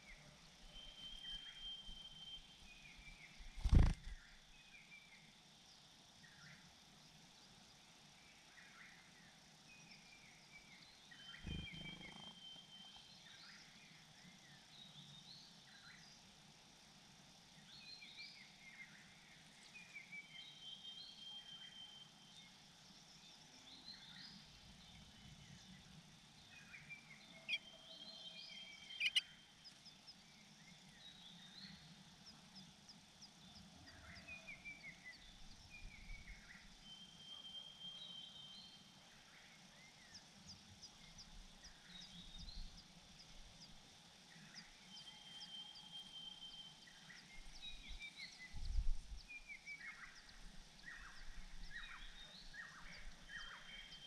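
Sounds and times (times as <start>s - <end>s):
birds chirping: 11.1s - 13.0s, 28.4s - 30.1s.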